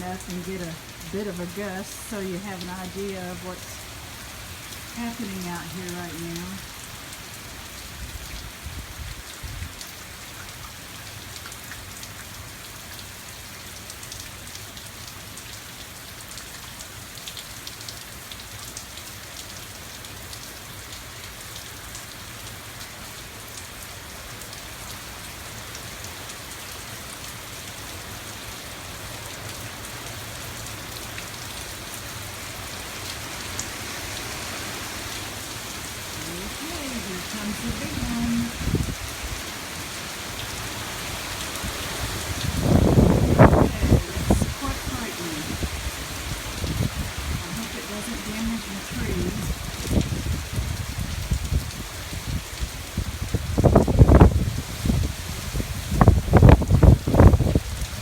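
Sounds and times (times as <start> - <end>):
heavy rain pouring: 0.0 - 58.0
wind buffeting microphone: 37.4 - 39.4, 41.1 - 47.7, 48.8 - 58.0.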